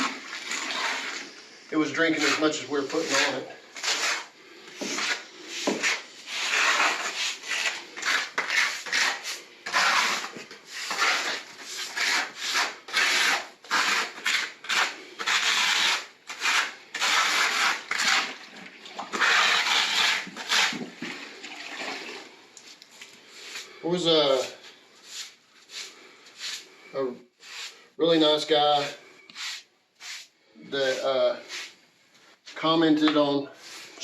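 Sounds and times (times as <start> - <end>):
scrubbing on floor tile: 1.9 - 18.4, 29.3 - 31.8.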